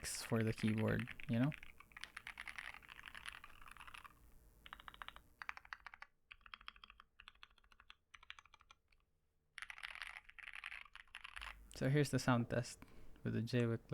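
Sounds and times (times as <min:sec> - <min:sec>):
mechanical keyboard typing: 0:00.1 - 0:09.0, 0:09.6 - 0:11.6.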